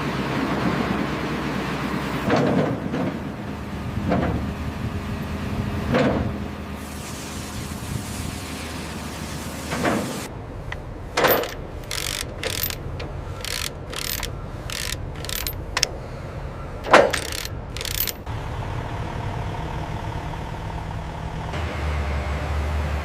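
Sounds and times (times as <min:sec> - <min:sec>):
heavy machinery hum: 0:00.0 - 0:23.0
sharp metallic clicks and clanks: 0:10.7 - 0:16.0, 0:16.8 - 0:18.3.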